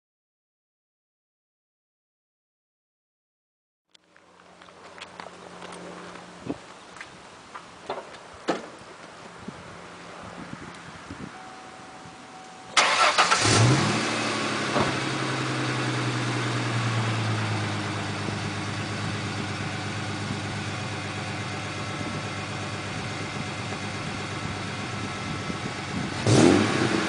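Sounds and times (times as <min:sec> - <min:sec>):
car engine idling: 0:12.6 - 0:27.0.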